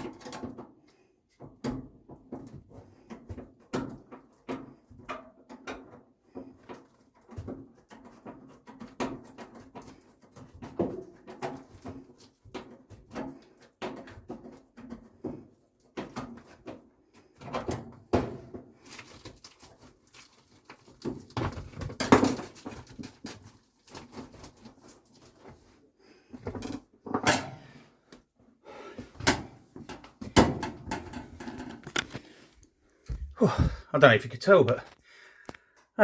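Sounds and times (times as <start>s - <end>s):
knocks clunks and scraping: 29.0s - 35.0s.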